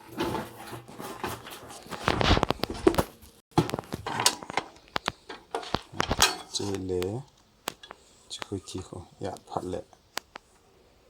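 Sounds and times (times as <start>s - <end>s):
packaging rustling: 0.2s - 6.9s
handling clicks and knocks: 2.4s - 10.4s.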